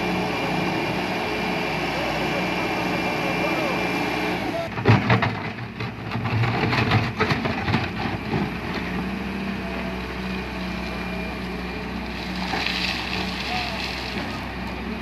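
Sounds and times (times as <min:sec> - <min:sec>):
heavy diesel machinery running: 0:00.0 - 0:15.0
knocks and clatter: 0:04.7 - 0:08.6.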